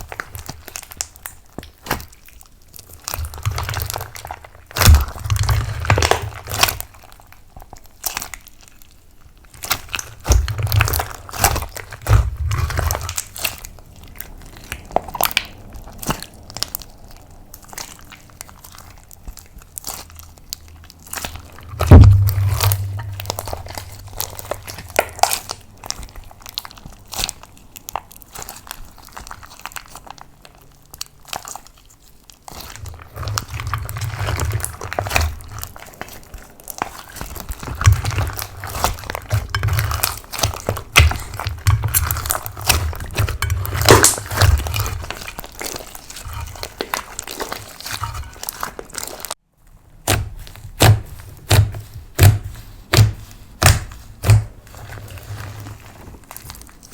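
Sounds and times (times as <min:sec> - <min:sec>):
slime crackling and popping: 0:00.0 - 0:56.9
dull low thuds: 0:21.7 - 0:25.0.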